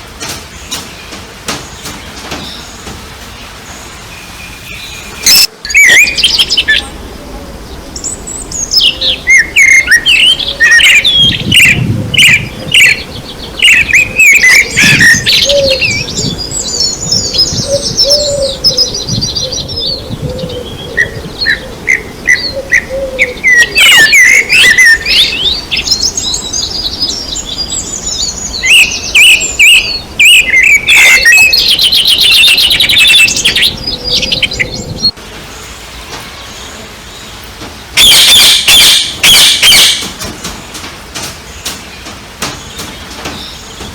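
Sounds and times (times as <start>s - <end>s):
songbirds singing: 0.0s - 43.9s
bird trills: 4.7s - 19.6s, 20.5s - 34.9s, 38.0s - 40.3s.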